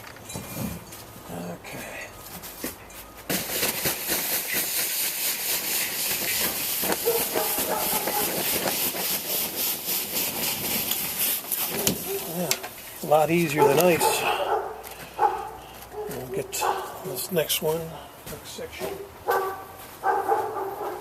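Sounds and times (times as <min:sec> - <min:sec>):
snow sliding off roof: 0:03.3 - 0:13.2.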